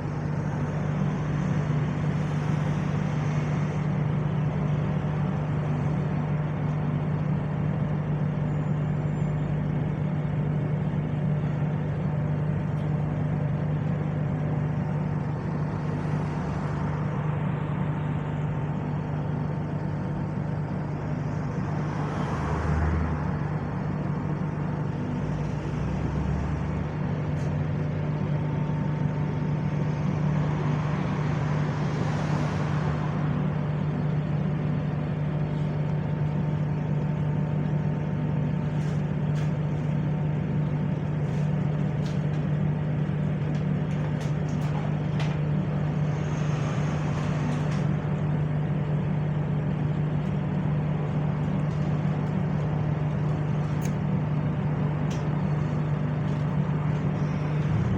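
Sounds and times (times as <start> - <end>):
bus engine drone: 0.0 - 57.9
road noise: 0.0 - 57.9
gearbox whine: 50.1 - 57.9.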